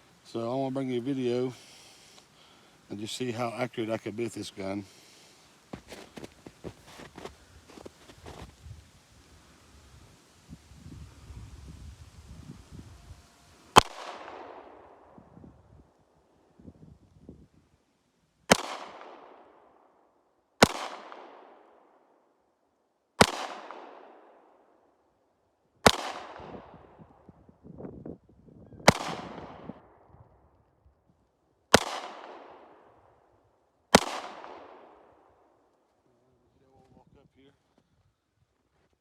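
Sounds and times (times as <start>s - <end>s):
pistol shots with echo: 13.7s - 15.2s, 18.5s - 19.8s, 20.6s - 22.0s, 23.2s - 24.6s, 25.8s - 27.0s, 28.8s - 30.0s, 31.7s - 33.0s, 33.9s - 35.4s.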